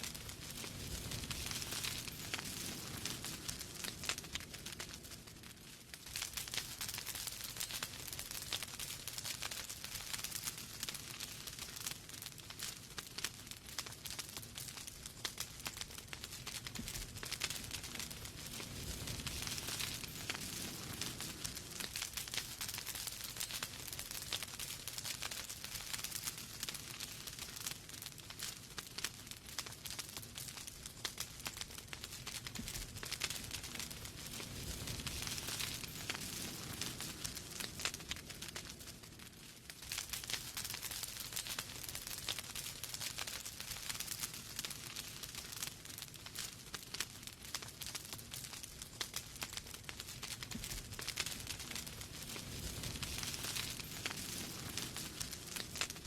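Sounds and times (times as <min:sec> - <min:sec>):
soft steady hiss: 0:00.0 - 0:56.0
wood fire crackling: 0:00.0 - 0:56.0.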